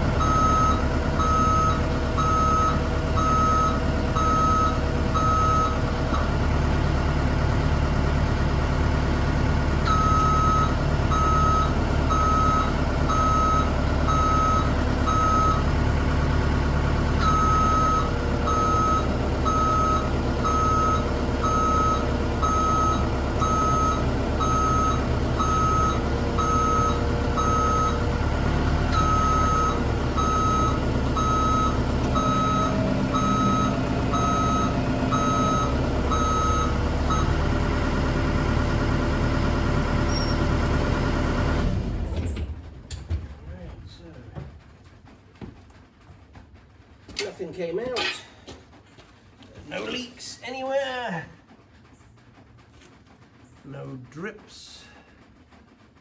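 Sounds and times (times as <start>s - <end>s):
excavator diesel engine running: 0.0s - 56.0s
travel alarm beeping: 0.2s - 6.3s, 9.8s - 15.8s, 17.2s - 28.2s, 28.8s - 38.0s.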